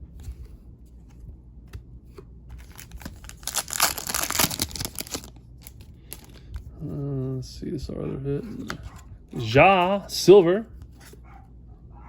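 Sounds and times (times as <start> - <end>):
wrapper crinkling and tearing: 2.6 - 6.4.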